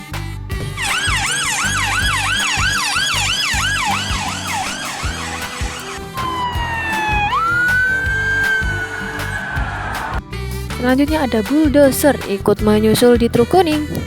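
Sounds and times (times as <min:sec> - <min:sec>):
background music with steady beat: 0:00.0 - 0:14.0
police siren yelping: 0:00.8 - 0:10.2.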